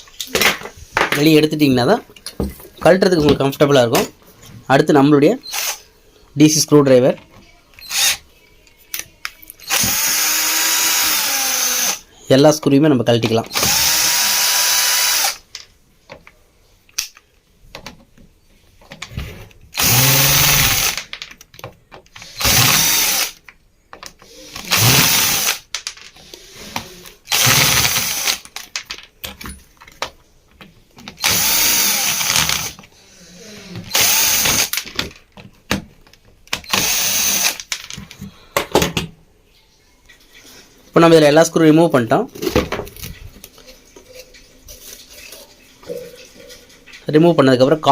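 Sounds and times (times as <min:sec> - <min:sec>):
electric screwdriver whirring: 0:05.4 - 0:05.8, 0:07.8 - 0:08.2, 0:09.6 - 0:12.0, 0:13.5 - 0:15.4, 0:19.8 - 0:21.0, 0:22.2 - 0:23.4, 0:24.5 - 0:25.6, 0:27.3 - 0:28.5, 0:31.2 - 0:32.8, 0:33.9 - 0:34.8, 0:36.6 - 0:37.7.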